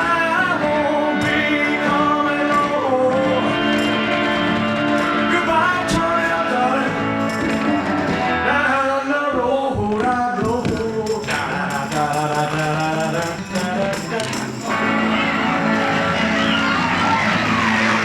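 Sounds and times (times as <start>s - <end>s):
man singing: 0.0s - 16.4s
rock and roll band playing: 0.0s - 18.0s
tambourine: 10.8s - 16.8s.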